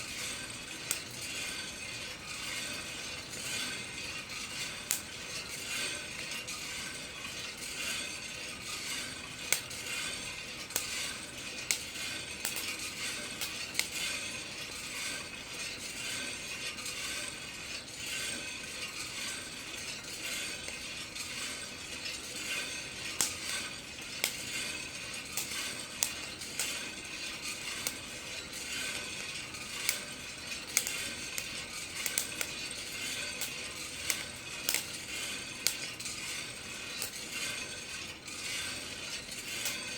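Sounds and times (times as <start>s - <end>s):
roaster drum rattling: 0.0s - 39.9s
coffee beans cracking: 11.7s - 14.0s, 23.1s - 23.6s, 24.2s - 24.5s, 25.2s - 27.0s, 30.7s - 36.2s.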